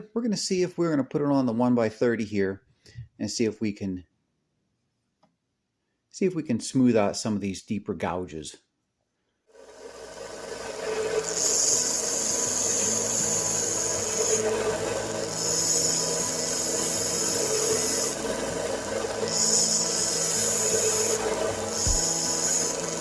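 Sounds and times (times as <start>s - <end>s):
belt sander motor hum: 9.6s - 23.0s
metal grinding on sanding belt: 9.8s - 23.0s.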